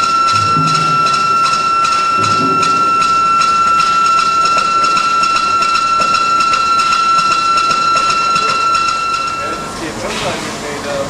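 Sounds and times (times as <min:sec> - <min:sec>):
industrial dicer whining: 0:00.0 - 0:11.0.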